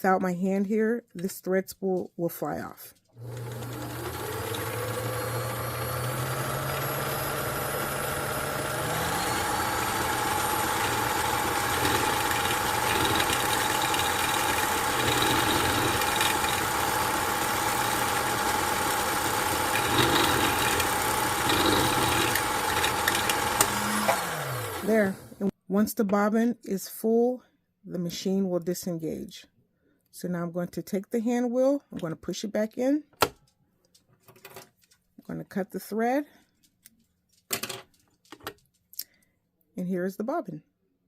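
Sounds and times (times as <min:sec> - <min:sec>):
sewing machine motor running: 0:03.2 - 0:25.4.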